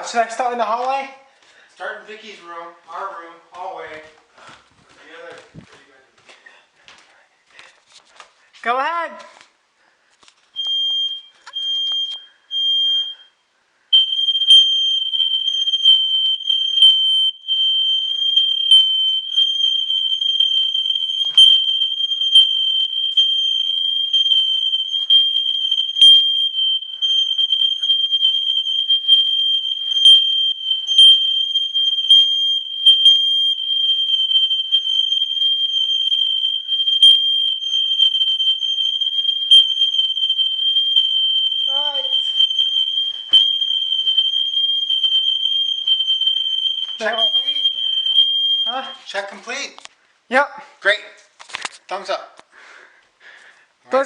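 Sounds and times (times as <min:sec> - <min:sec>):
smoke alarm beeps: 0:10.5 - 0:49.8
smoke alarm high-pitched tone: 0:10.6 - 0:49.5.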